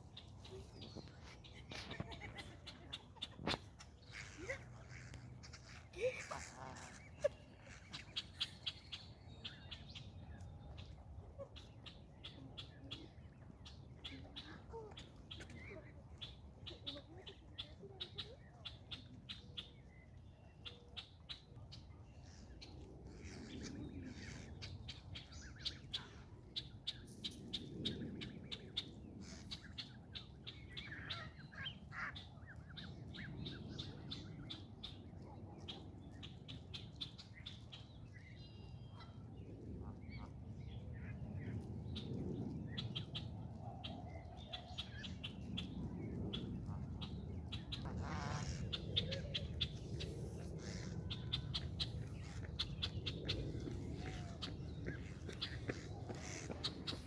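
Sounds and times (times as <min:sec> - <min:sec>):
blackbirds chirping: 0:44.1 - 0:57.0.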